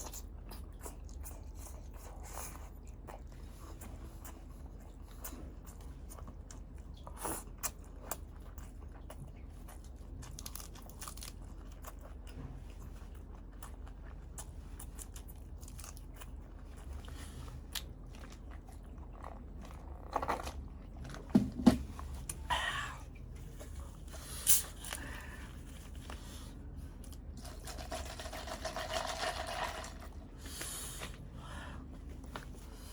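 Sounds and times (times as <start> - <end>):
chewing with crunches: 0.0 - 21.3
steady low hum: 0.0 - 32.9.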